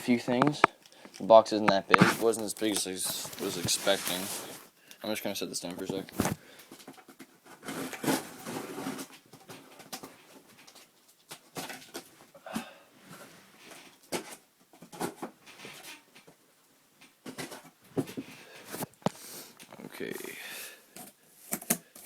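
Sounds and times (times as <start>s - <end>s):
rustling and clicks of handling: 0.2s - 12.2s, 17.0s - 22.0s.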